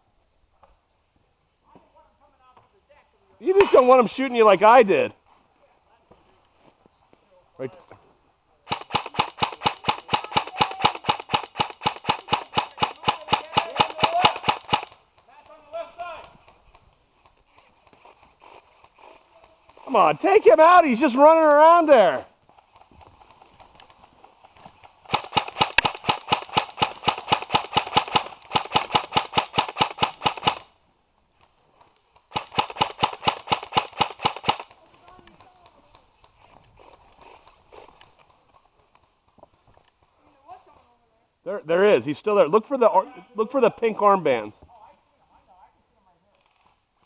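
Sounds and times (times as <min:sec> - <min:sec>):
airsoft gun full-auto firing: 0:08.7 - 0:15.0, 0:25.1 - 0:30.7, 0:32.3 - 0:34.8.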